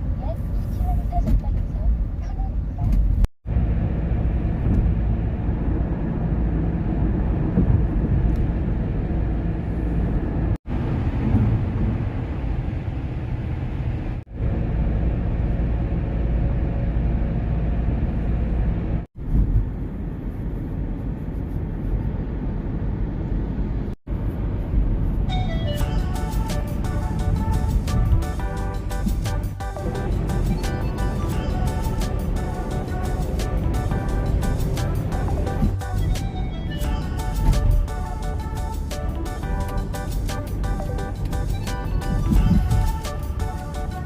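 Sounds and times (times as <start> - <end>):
motor vehicle rumble: 0.0 - 44.0.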